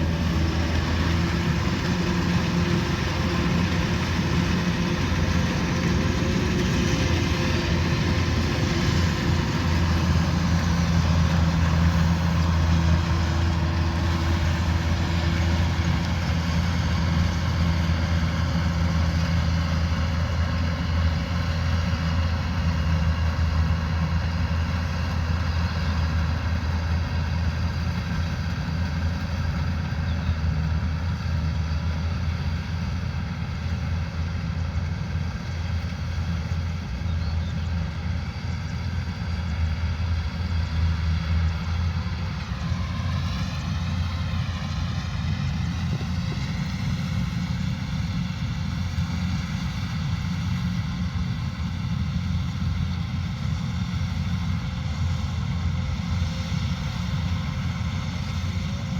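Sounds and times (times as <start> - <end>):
combine harvester diesel drone: 0.0 - 58.9.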